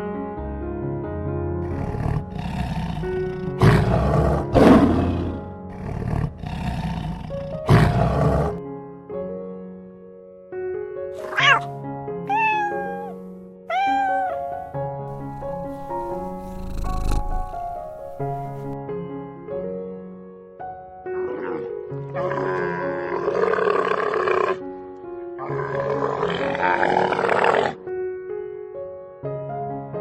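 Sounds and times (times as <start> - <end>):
soft piano music: 0.0 - 30.0
animal growling: 1.6 - 8.6, 11.2 - 13.2, 15.1 - 18.8, 21.1 - 24.6, 25.4 - 27.8
cat meowing: 11.2 - 14.7.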